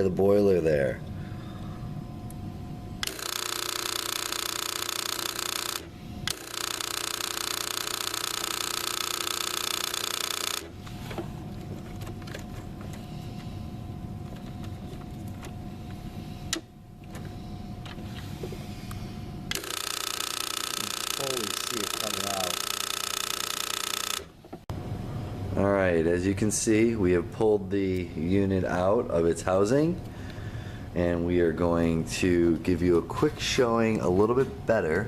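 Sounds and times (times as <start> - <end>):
espresso machine pump buzzing: 1.1 - 24.7
low hum: 10.6 - 19.7.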